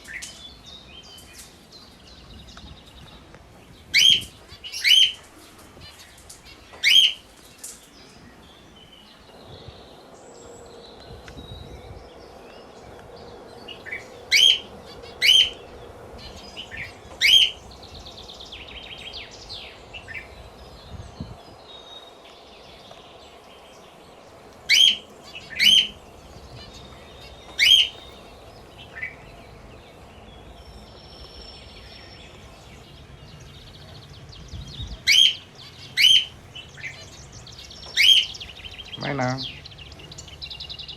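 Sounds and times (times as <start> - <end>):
parrots chirping and chattering: 3.8 - 8.1, 13.5 - 20.5, 21.5 - 30.3, 34.9 - 40.9
parrots shrill calls: 14.3 - 15.6, 16.2 - 17.6, 24.7 - 26.0, 26.6 - 28.2, 35.1 - 36.4.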